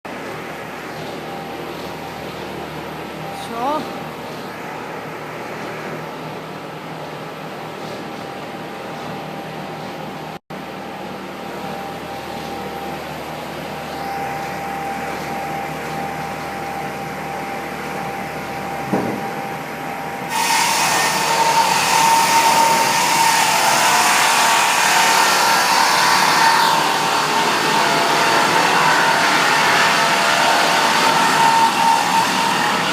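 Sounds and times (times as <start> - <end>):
saw machine running: 10.9 - 32.9.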